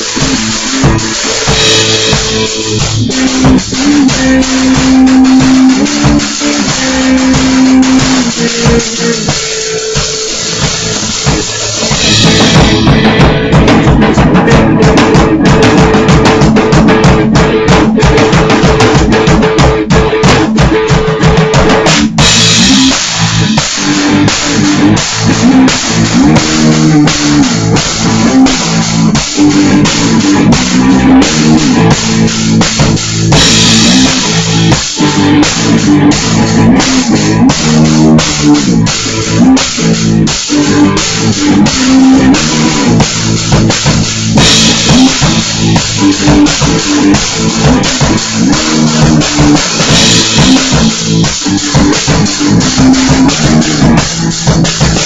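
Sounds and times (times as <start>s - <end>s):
cymbal crashes: 0.0s - 14.3s, 42.7s - 52.5s
drum kit beat: 0.0s - 55.0s
electric guitar riff: 0.0s - 55.0s.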